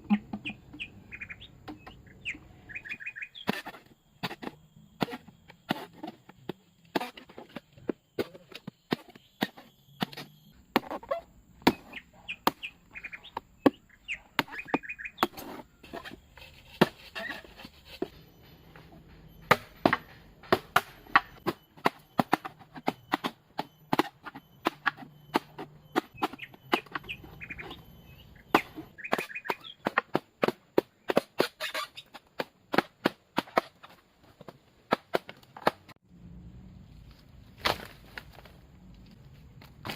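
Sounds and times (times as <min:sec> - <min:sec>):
bird calling: 0:00.0 - 0:04.0, 0:11.0 - 0:30.1
chopping strikes on bamboo: 0:19.5 - 0:22.5.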